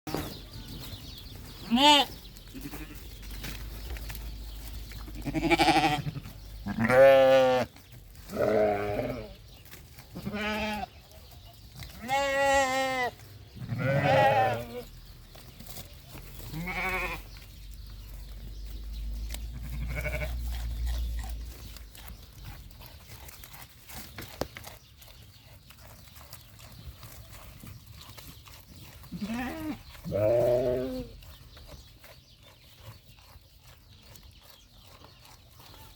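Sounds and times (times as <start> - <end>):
goats and sheep bleating: 1.5 - 3.3, 4.9 - 11.1, 11.8 - 15.0, 16.4 - 17.5, 19.3 - 21.9, 28.9 - 31.4.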